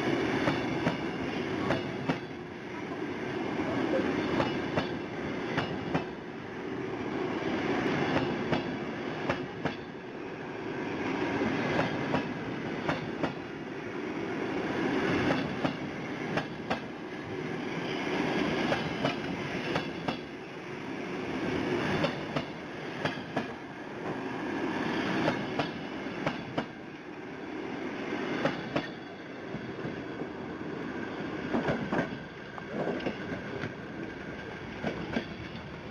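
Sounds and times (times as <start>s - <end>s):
train rolling along track: 0.0s - 35.9s
train wheels clicking over rail joints: 0.3s - 2.4s, 4.2s - 6.2s, 7.8s - 10.0s, 11.0s - 13.5s, 15.0s - 17.2s, 17.8s - 20.4s, 21.8s - 24.2s, 25.0s - 27.0s, 28.3s - 30.0s, 31.4s - 35.9s.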